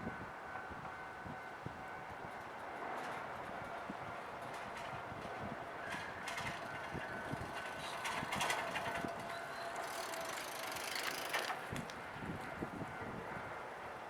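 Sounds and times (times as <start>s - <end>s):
two-tone crossing warning bell: 0.0s - 10.8s
train wheels clacking over rail joints: 2.2s - 12.0s.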